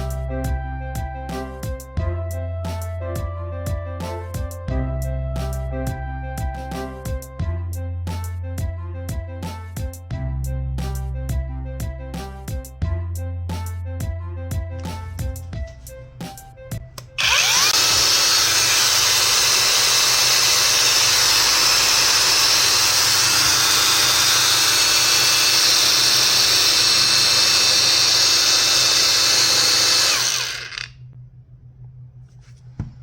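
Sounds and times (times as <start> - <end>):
angle grinder running: 17.0 - 31.0.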